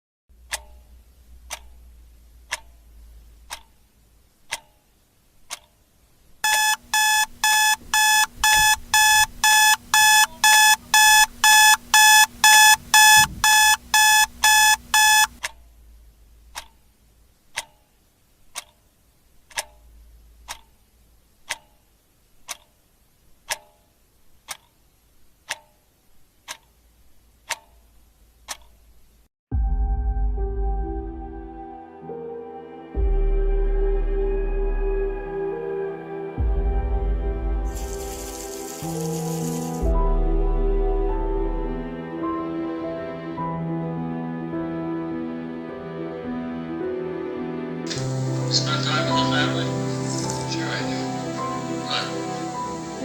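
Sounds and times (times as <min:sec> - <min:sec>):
clock ticking: 0:00.4 - 0:01.8, 0:02.4 - 0:02.8, 0:03.4 - 0:03.8, 0:04.5 - 0:04.7, 0:06.4 - 0:15.6, 0:16.5 - 0:16.8, 0:17.5 - 0:17.8, 0:19.4 - 0:19.8, 0:25.4 - 0:25.8
alarm clock beeping: 0:06.4 - 0:15.4.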